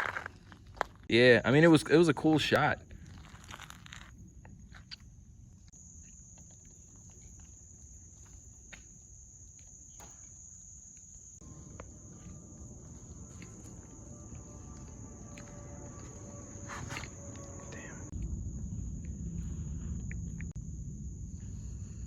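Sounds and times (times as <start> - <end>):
high-pitched insect trill: 1.2 - 22.0
footsteps: 11.4 - 20.6.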